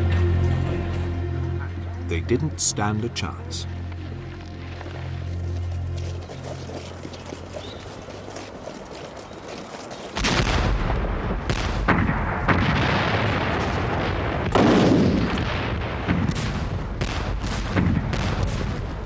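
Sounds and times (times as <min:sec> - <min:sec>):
heavy artillery blasts: 0:10.2 - 0:19.0
sharp gunshots: 0:10.2 - 0:19.0.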